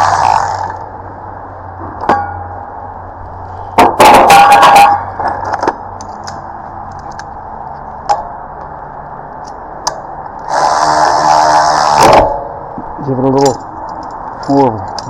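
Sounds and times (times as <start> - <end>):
cordless power tool running: 10.5 - 12.3.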